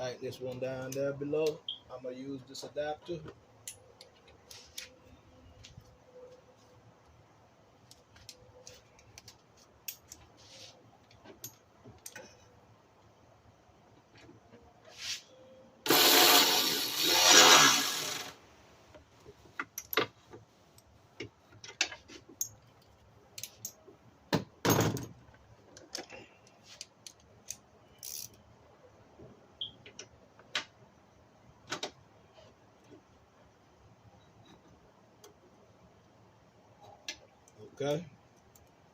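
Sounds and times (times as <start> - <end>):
loud noisy burst: 15.8 - 18.4
ratchet clicking on metal: 27.0 - 28.4.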